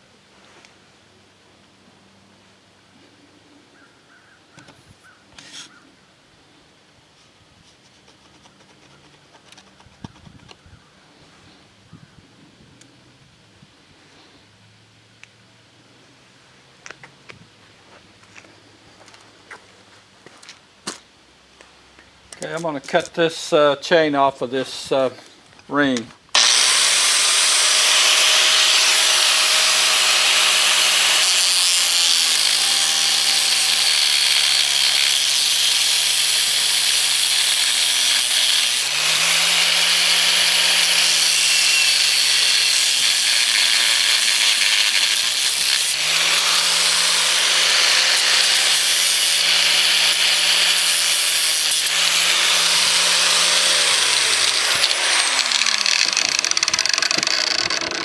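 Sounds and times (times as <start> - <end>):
power tool cutting steel chain: 26.3 - 58.0.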